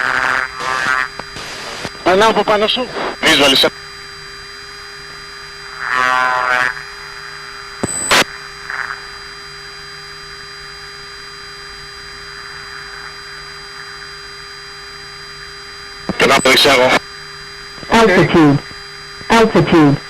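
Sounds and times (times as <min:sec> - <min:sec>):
electronic intercom hum and whine: 0:00.0 - 0:20.0
brief buzzing tone: 0:07.4 - 0:17.8.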